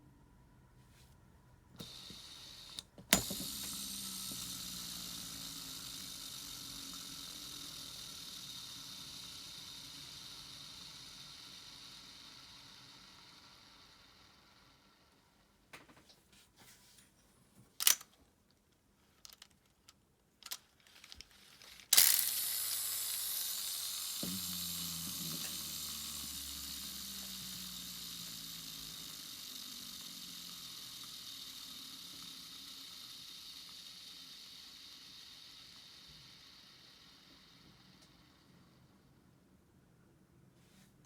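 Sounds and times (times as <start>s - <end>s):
fishing reel spool whirring: 1.8s - 15.2s, 21.8s - 39.0s
fishing reel handling clicks: 17.8s - 18.0s, 20.4s - 34.1s.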